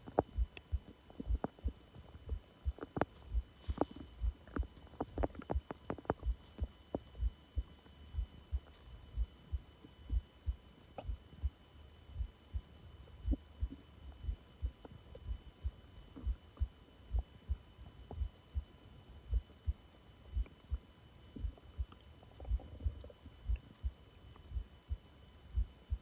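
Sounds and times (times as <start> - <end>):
faint stomach gurgles: 0.0 - 7.4, 21.3 - 24.7
heartbeat thumps: 0.0 - 18.7, 19.3 - 20.8, 21.4 - 26.0.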